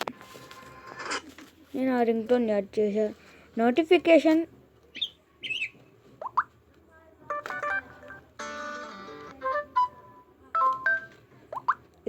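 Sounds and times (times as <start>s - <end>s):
phone notification tones: 7.3s - 11.8s.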